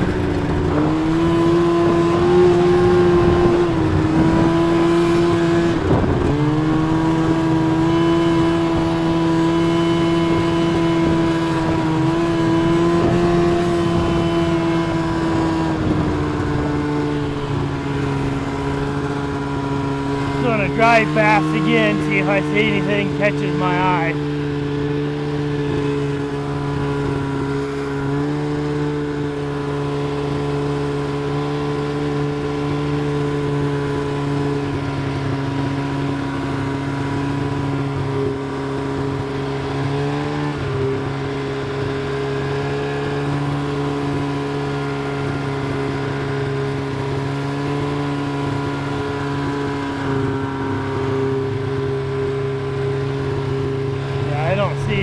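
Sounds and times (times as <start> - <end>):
vehicle engine running: 0.0 - 55.0.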